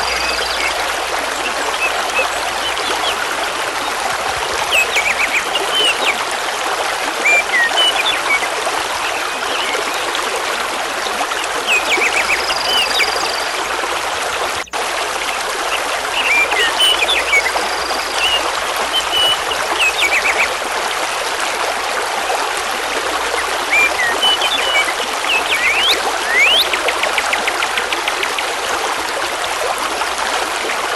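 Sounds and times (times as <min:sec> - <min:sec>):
small birds chirping: 0:00.0 - 0:03.3, 0:04.6 - 0:06.2, 0:07.2 - 0:09.8, 0:11.6 - 0:13.6, 0:15.7 - 0:20.5, 0:23.0 - 0:28.6
river rushing over stones: 0:00.0 - 0:30.9.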